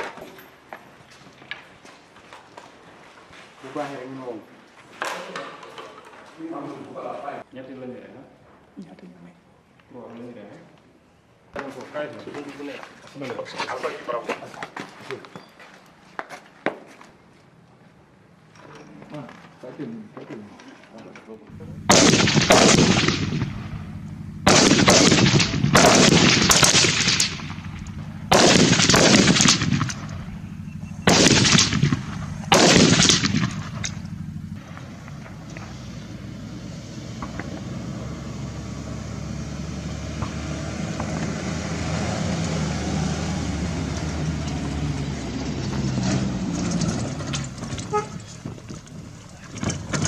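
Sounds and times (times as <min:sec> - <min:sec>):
steady low rumbling: 0:21.5 - 0:38.1
automatic rifle fire: 0:21.8 - 0:30.4, 0:31.0 - 0:34.0.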